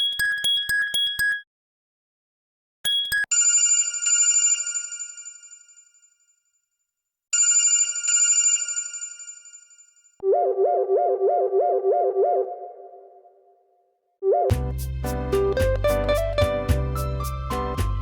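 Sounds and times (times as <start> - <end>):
trilling electronic bell ringtone: 0.0 - 1.4, 2.9 - 6.3, 7.4 - 10.2.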